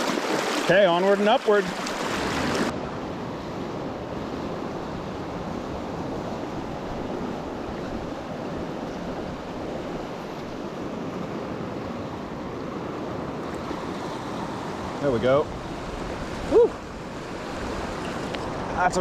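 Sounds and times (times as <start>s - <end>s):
river current roaring: 0.0s - 19.0s.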